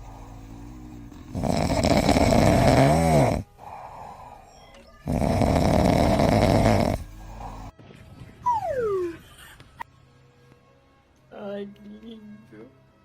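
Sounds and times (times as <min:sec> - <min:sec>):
pet snoring loudly: 0:00.0 - 0:07.7.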